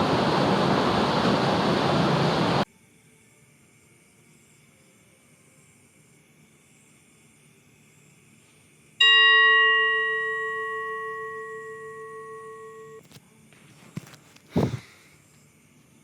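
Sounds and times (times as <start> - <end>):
bell-like chime ringing: 9.0 - 13.0
short thump: 14.5 - 14.9.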